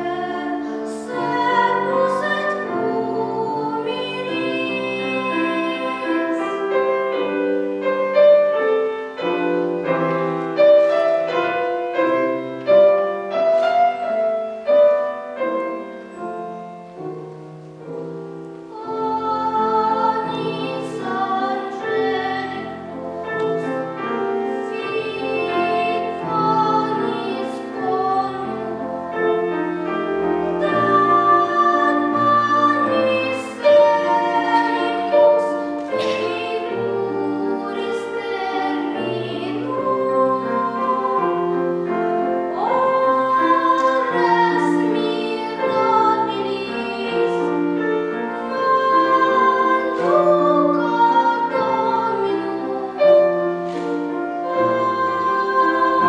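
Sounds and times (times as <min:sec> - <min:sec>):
child singing with vibrato: 0:00.0 - 0:06.8, 0:18.7 - 0:24.0, 0:24.6 - 0:47.8, 0:48.4 - 0:56.0
piano accompaniment: 0:00.0 - 0:56.0.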